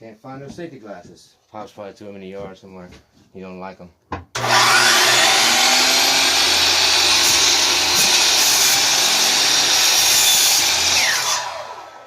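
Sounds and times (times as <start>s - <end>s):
miter saw motor whining: 4.4s - 12.0s
saw blade cutting wood: 4.4s - 12.0s.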